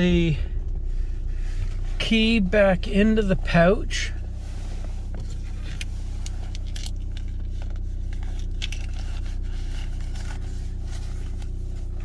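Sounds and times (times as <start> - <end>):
rotary engine idling: 0.0 - 12.0
crinkling and scraping of fabric pouch: 4.5 - 12.0.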